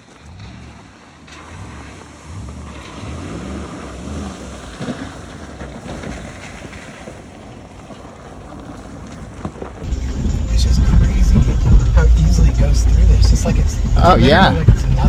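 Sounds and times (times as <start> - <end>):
vehicle engine and tyres rumbling: 0.0 - 15.0.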